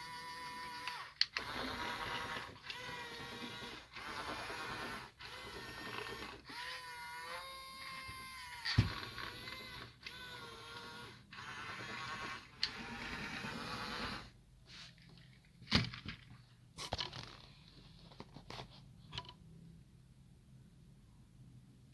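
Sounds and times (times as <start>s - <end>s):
small electric motors whirring: 0.0s - 14.3s.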